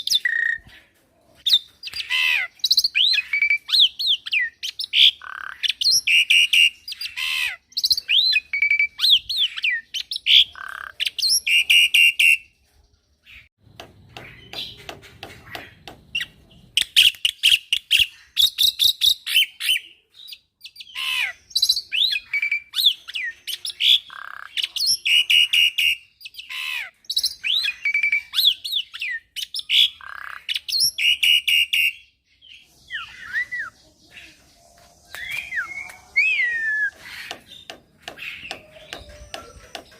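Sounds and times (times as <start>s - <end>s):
starling singing: 1.5s - 12.5s, 14.1s - 39.9s
soft bird clicks: 35.1s - 36.1s.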